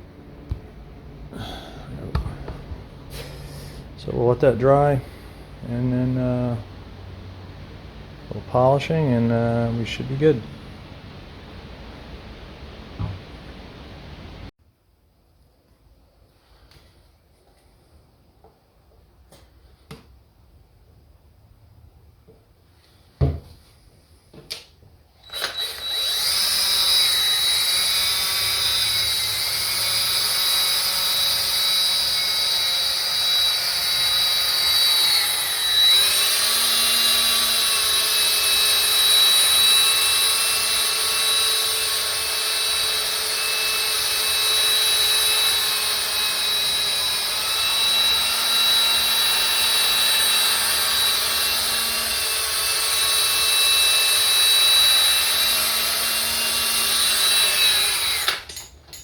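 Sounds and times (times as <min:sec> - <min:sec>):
power tool high whine: 0:25.2 - 0:58.7.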